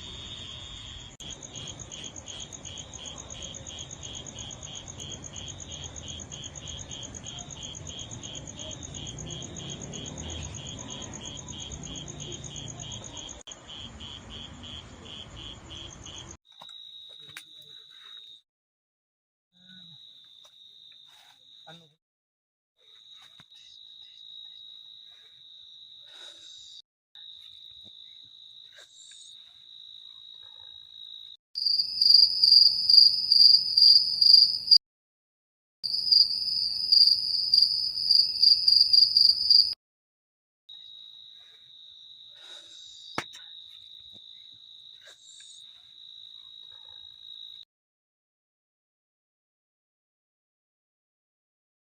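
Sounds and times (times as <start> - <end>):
crickets trilling: 0.0 - 18.4, 22.9 - 34.8, 35.9 - 39.8
loud pulsing insect call: 0.0 - 18.4, 35.9 - 39.8.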